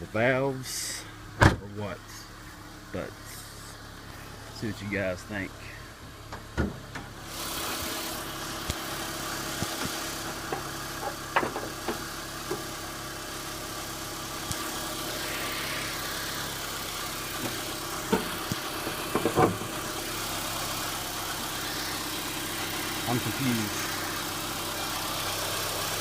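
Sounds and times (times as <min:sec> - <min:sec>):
car engine idling: 0:00.0 - 0:26.0
sharp engine knocks: 0:01.4 - 0:01.6, 0:09.6 - 0:12.8, 0:17.4 - 0:20.0.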